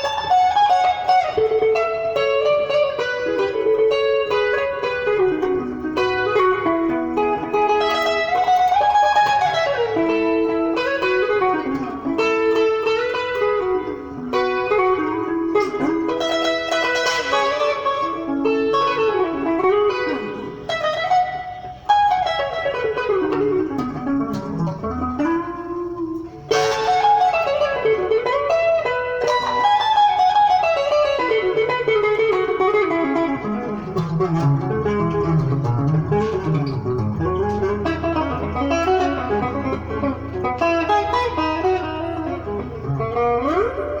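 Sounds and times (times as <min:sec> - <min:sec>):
electric guitar fast lead: 0:00.0 - 0:44.0.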